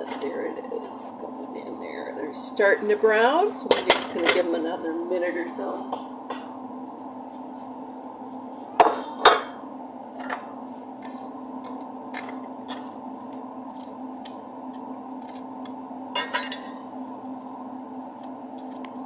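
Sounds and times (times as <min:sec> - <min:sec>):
steady low hum: 0:00.0 - 0:19.0
bread toasting in oil: 0:09.8 - 0:19.0.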